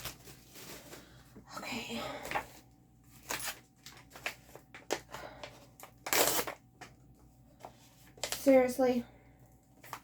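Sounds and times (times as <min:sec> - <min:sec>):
packaging rustle: 0:00.0 - 0:01.3, 0:03.1 - 0:06.9.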